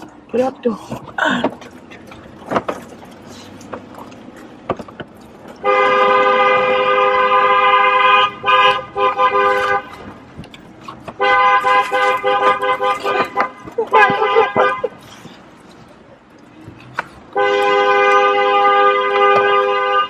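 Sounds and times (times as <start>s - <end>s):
car horn honking: 5.6s - 10.3s, 11.1s - 15.2s, 17.2s - 20.0s.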